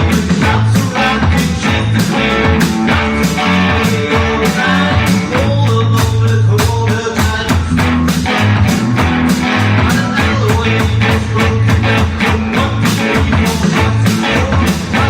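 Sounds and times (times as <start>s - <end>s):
rock and roll band playing: 0.0s - 15.0s.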